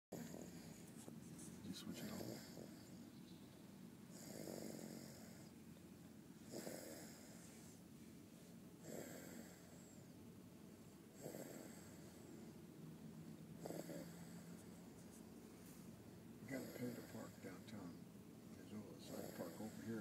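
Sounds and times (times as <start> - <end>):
snoring: 0.1 - 0.9, 1.8 - 3.0, 4.1 - 5.5, 6.4 - 7.7, 8.8 - 10.1, 11.1 - 12.4, 13.6 - 14.7, 16.5 - 17.8, 19.0 - 20.0.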